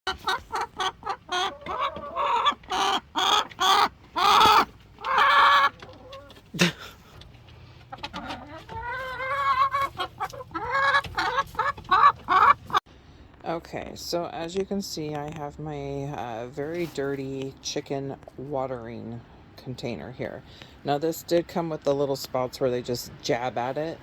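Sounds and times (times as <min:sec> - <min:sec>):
chickens clucking: 0:00.1 - 0:12.8.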